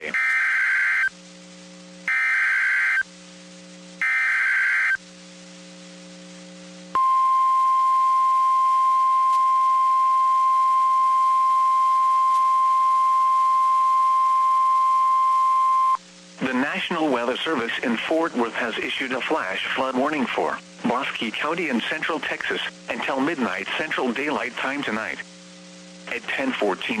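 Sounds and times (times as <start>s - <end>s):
steady warning alarm tone: 0.0s - 1.1s, 2.1s - 3.0s, 4.0s - 5.0s.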